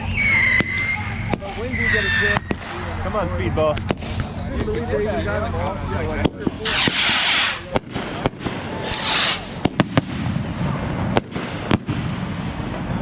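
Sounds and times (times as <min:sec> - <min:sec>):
fireworks hissing and crackling: 0:00.0 - 0:03.0, 0:06.2 - 0:13.0
fireworks bangs and pops: 0:00.1 - 0:02.9, 0:03.8 - 0:04.7, 0:06.2 - 0:13.0.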